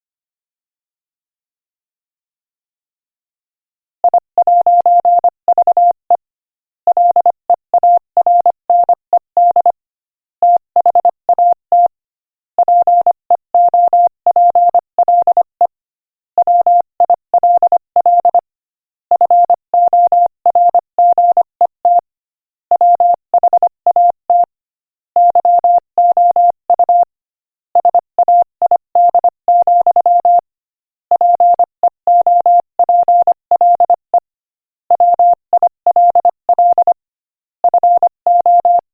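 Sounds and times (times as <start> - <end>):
morse code beeps: 4.0 - 6.0, 6.9 - 9.8, 10.4 - 11.9, 12.6 - 15.7, 16.4 - 18.4, 19.1 - 22.0, 22.7 - 24.5, 25.2 - 27.1, 27.8 - 30.5, 31.1 - 34.2, 34.9 - 37.0, 37.6 - 38.8.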